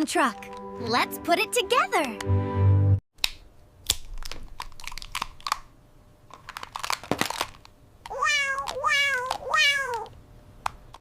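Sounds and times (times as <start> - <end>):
plastic toy pieces clicking: 3.9 - 5.6, 6.3 - 10.1
cat meowing: 8.1 - 10.1.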